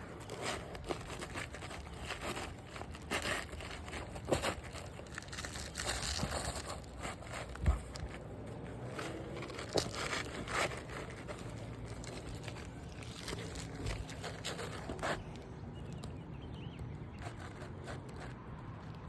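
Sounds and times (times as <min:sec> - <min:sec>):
roof shingles crinkling: 0:00.0 - 0:16.2, 0:17.2 - 0:19.0.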